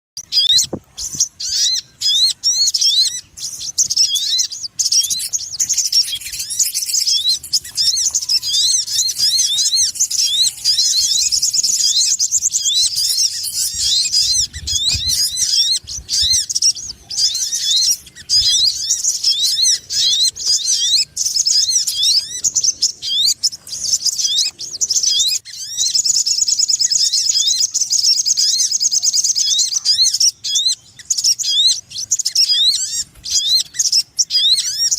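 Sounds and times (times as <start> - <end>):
bird chirps and trills: 0.2 - 34.9.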